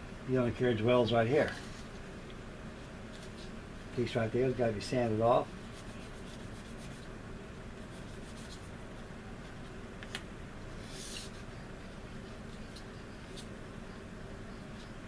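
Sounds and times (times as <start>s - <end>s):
sandpaper scratching plastic: 5.7s - 7.1s.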